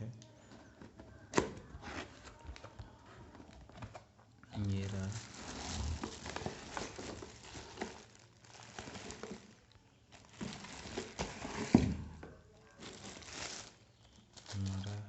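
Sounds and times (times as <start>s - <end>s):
packaging rustling: 4.9s - 12.0s, 12.7s - 15.0s.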